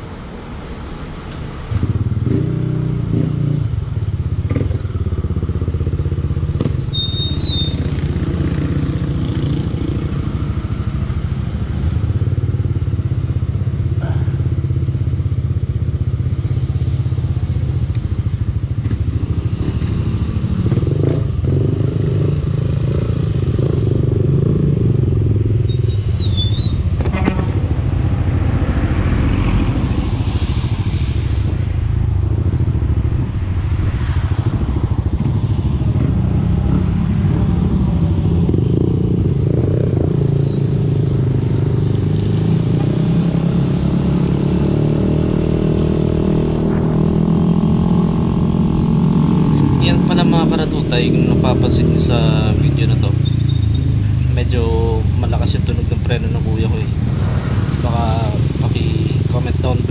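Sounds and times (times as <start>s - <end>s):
high-pitched squeals: 6.9s - 7.9s, 25.6s - 27.6s
wind rushing over camera: 26.8s - 39.3s.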